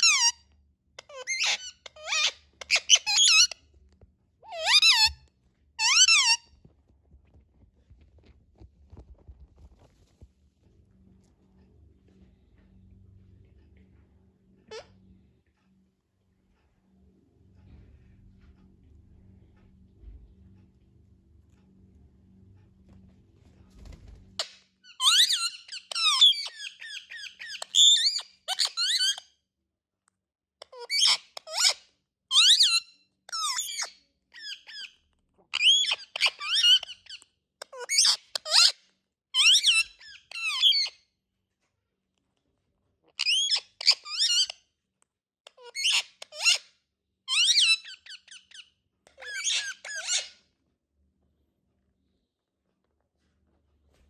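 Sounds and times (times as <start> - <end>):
parakeet chirping and squeaking: 0.0 - 0.4, 1.0 - 3.6, 4.4 - 5.2, 5.8 - 6.5, 14.7 - 14.9, 24.4 - 29.2, 30.6 - 38.8, 39.4 - 41.0, 43.1 - 44.6, 45.5 - 46.7, 47.3 - 50.4.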